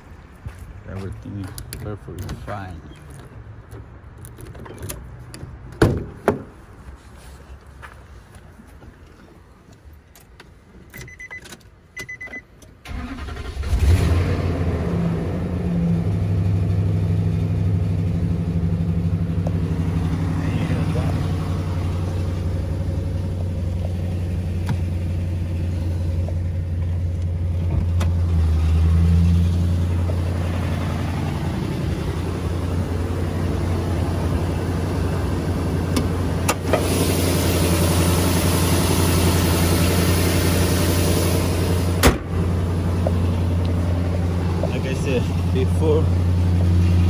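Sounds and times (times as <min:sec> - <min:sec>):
car engine idling: 0:14.6 - 0:47.0.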